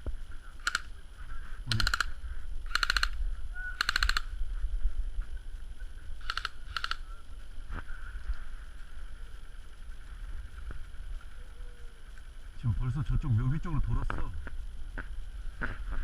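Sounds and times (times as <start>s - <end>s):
wind rumble on microphone: 0.0s - 16.0s
airsoft guns firing bursts: 1.7s - 3.2s, 3.8s - 4.4s, 6.2s - 7.0s.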